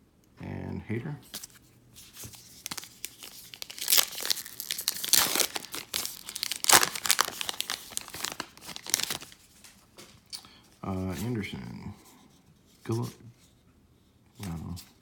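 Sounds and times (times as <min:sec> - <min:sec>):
wrapper tearing and crinkling: 0:02.1 - 0:09.7.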